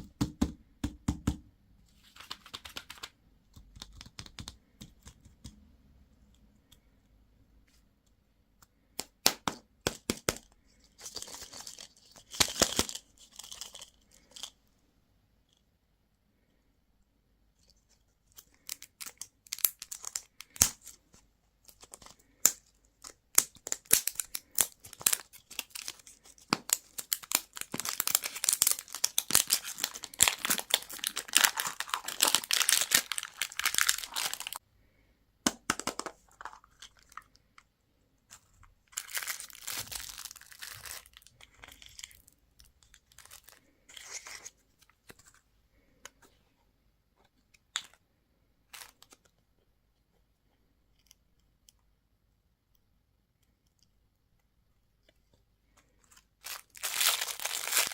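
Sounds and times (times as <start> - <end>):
crinkly packaging being unwrapped: 10.8 - 14.6, 18.3 - 21.0, 21.7 - 34.6, 38.3 - 45.3, 56.0 - 57.9.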